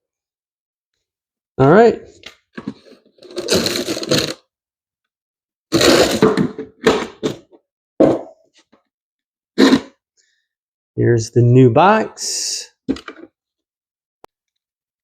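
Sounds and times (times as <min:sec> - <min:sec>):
packaging rustling and scraping: 0:02.6 - 0:04.4, 0:05.7 - 0:06.5.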